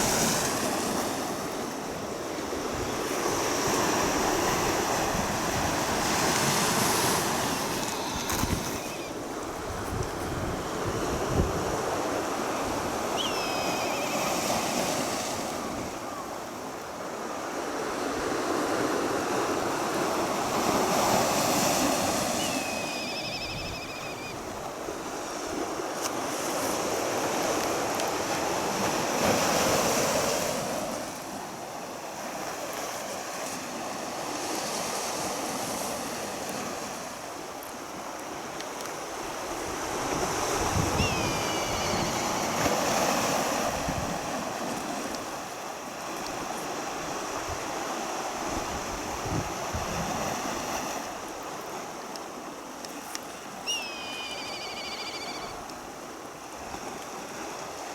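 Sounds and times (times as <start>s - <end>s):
sea waves washing ashore: 0.0s - 57.9s
wind buffeting microphone: 2.6s - 13.3s, 39.3s - 45.0s
high whistling calls: 7.8s - 9.2s, 13.1s - 14.6s, 22.2s - 24.4s, 40.9s - 42.4s, 53.6s - 55.6s.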